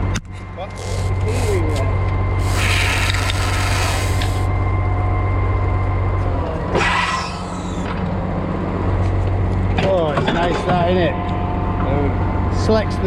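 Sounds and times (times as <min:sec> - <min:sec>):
short bursts of hiss: 0:02.4 - 0:04.5.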